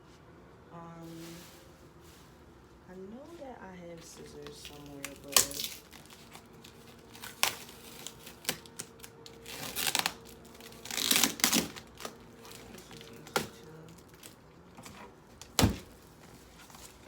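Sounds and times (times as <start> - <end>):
packing tape and cardboard tearing: 4.2 - 17.0.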